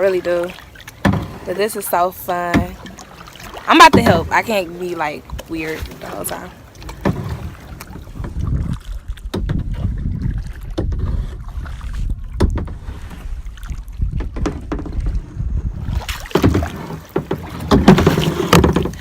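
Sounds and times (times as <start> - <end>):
wind rumble on microphone: 5.3 - 16.9.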